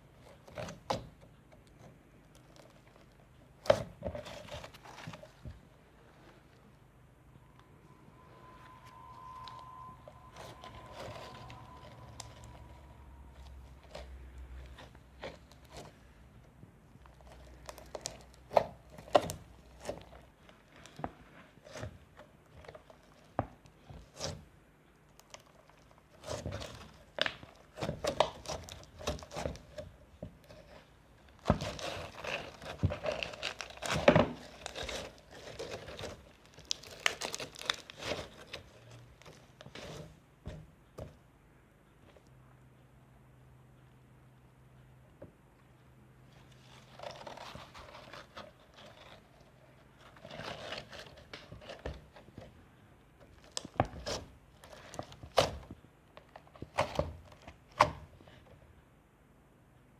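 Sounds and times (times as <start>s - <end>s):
slime crackling and popping: 17.0s - 21.0s, 31.4s - 38.5s.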